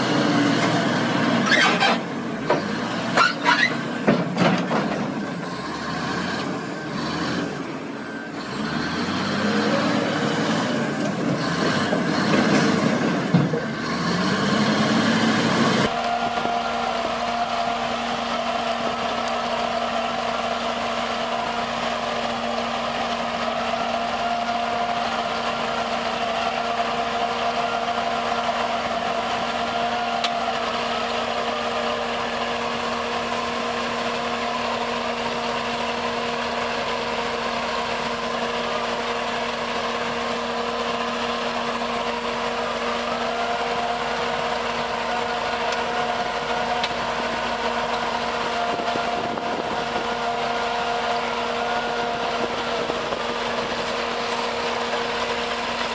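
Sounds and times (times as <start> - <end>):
heavy machine engine running: 0.0 - 55.9
steady whine: 42.4 - 55.9.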